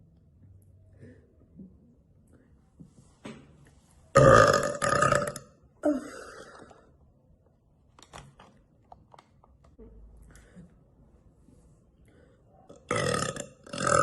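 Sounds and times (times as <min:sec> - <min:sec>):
woman burping: 0:04.2 - 0:06.9, 0:12.8 - 0:14.0.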